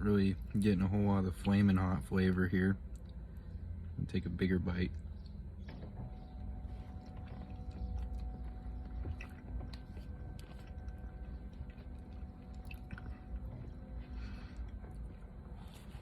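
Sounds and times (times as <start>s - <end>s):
steady low rumble: 0.0s - 16.0s
person chewing food: 6.3s - 16.0s.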